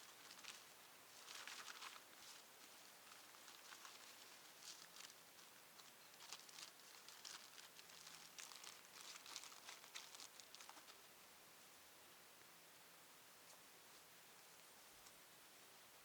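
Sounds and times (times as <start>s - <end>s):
faint rustling and crinkling: 0.0s - 11.8s.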